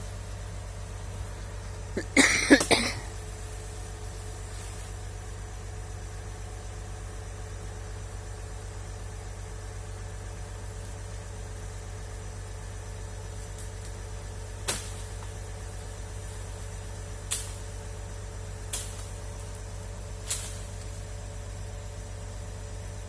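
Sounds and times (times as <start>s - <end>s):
diesel engine idling: 0.0s - 23.0s.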